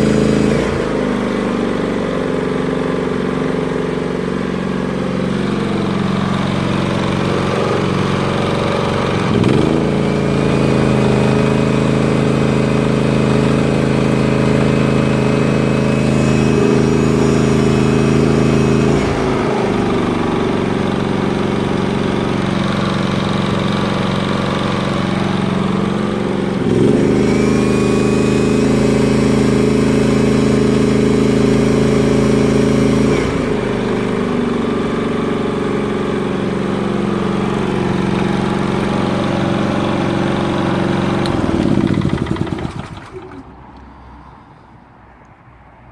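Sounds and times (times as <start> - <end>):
generator engine running: 0.0 - 43.7
heat gun high whine: 13.1 - 20.4, 26.5 - 34.5.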